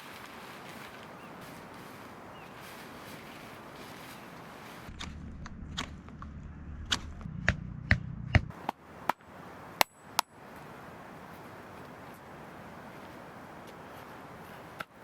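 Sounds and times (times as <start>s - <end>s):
low rumble: 4.8s - 8.5s
sharp knocks: 4.9s - 8.5s.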